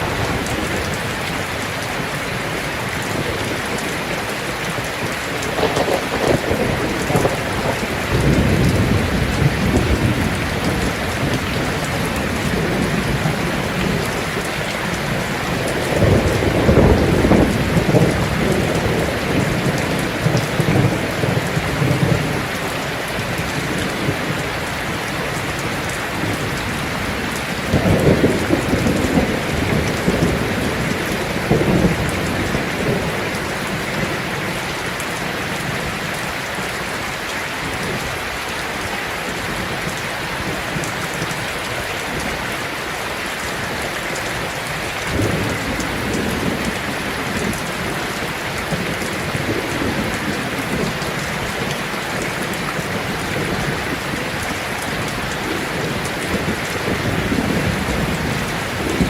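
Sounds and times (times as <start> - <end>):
heavy rain on a tin roof: 0.0 - 59.0
thunder rolling: 5.4 - 14.4, 15.0 - 22.5, 25.5 - 34.5, 45.1 - 59.0.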